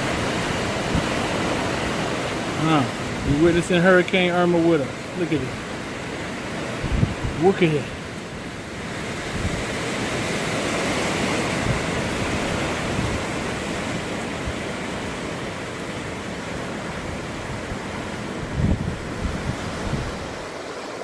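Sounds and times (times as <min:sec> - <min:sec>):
wind thumping microphone: 0:00.0 - 0:03.6, 0:06.4 - 0:20.6
strong wind rushing: 0:00.0 - 0:03.7, 0:06.6 - 0:15.3, 0:17.0 - 0:20.6.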